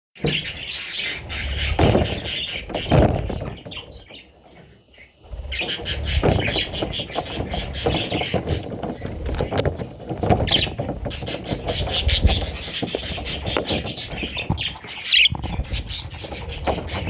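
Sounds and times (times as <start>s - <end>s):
parrots calling: 0.3s - 4.2s, 10.4s - 17.0s.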